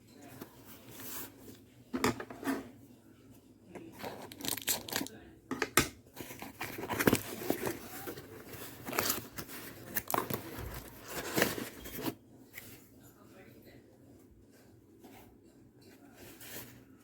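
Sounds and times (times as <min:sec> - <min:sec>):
packaging tearing and crinkling: 0:04.1 - 0:05.1, 0:06.3 - 0:11.8.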